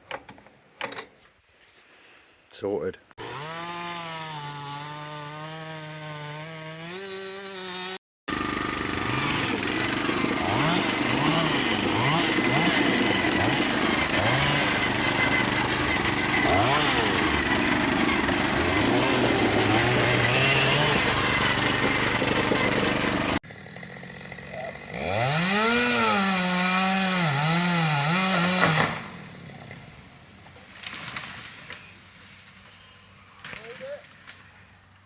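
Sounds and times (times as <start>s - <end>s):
small petrol engine revving: 3.2s - 29.9s.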